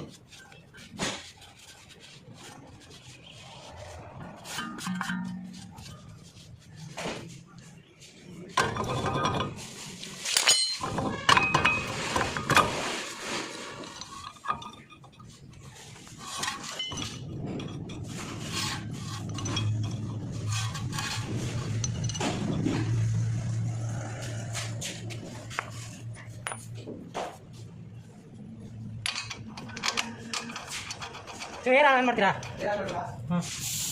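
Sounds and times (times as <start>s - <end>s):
metal tools clinking: 10.2s - 12.5s, 13.8s - 23.0s, 29.0s - 32.9s.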